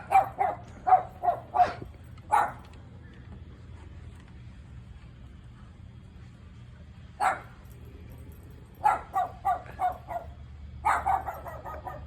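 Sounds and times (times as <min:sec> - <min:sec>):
small dog barking: 0:00.0 - 0:02.7, 0:07.2 - 0:07.6, 0:08.8 - 0:12.0.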